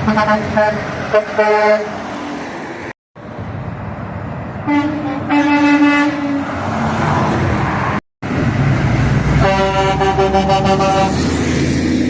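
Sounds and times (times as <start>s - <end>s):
truck air horn blast: 0.0s - 2.0s, 4.7s - 6.6s, 9.4s - 11.4s
engine and road rumble: 0.0s - 12.0s.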